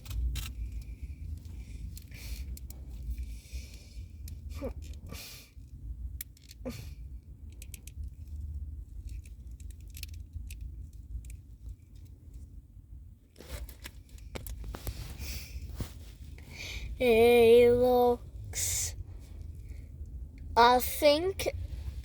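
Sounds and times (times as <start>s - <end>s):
plastic figure clicks and rustles: 0.0s - 12.4s, 13.4s - 15.1s.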